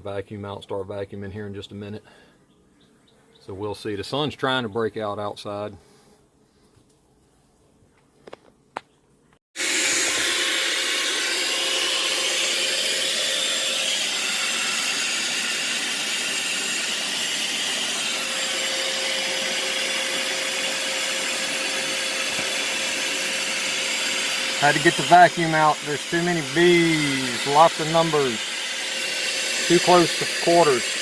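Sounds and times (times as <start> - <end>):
vacuum humming: 9.6 - 31.0.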